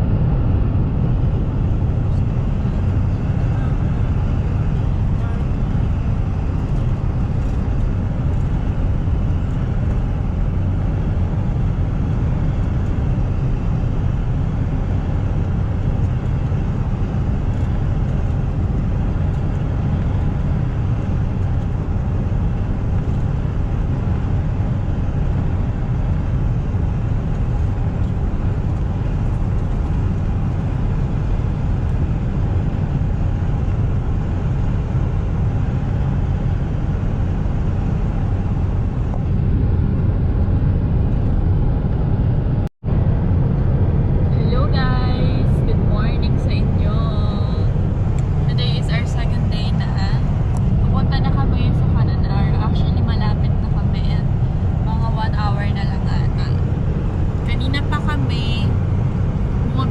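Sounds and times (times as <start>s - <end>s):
car driving on road: 0.0s - 59.9s.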